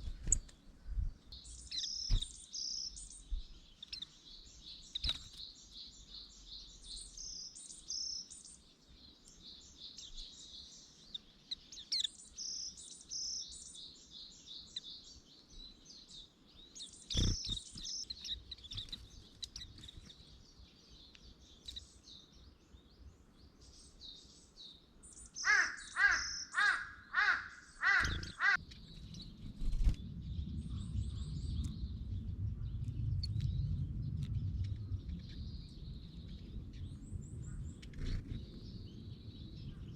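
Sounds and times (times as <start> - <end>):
small songbirds chirping: 0.0 - 39.9
larger bird loud calls: 25.4 - 28.7
low rumble: 28.2 - 39.9.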